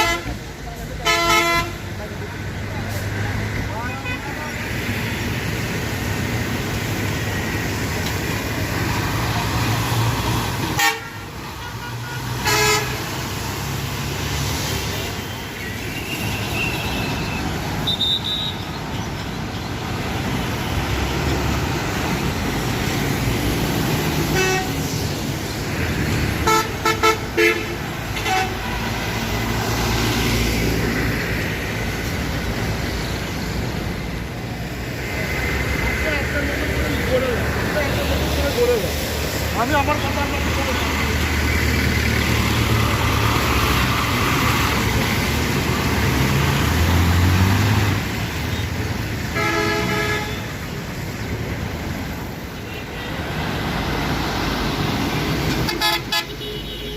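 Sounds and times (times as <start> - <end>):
vehicle horns blaring: 0.0 - 0.4, 1.0 - 1.8, 10.6 - 13.2, 15.2 - 18.7, 24.2 - 24.9, 26.4 - 28.8, 48.5 - 50.6, 55.5 - 56.9
traffic engine rumble and road noise: 0.0 - 56.9.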